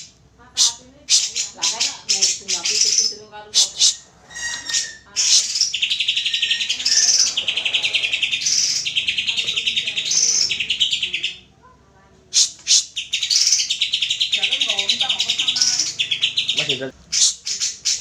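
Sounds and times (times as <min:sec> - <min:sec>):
bird song with rapid chattering notes: 0:00.0 - 0:11.5, 0:12.3 - 0:18.0.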